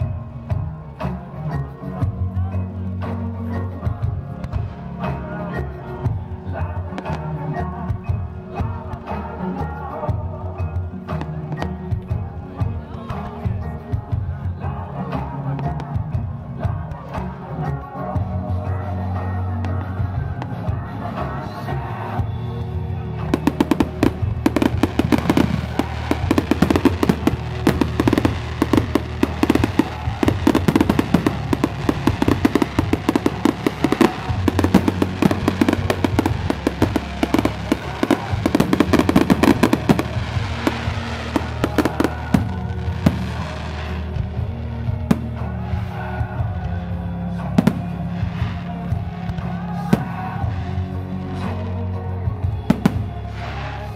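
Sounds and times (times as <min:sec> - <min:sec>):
music: 0:00.0 - 0:53.9
fireworks crackling and popping: 0:23.2 - 0:46.0, 0:52.5 - 0:53.9.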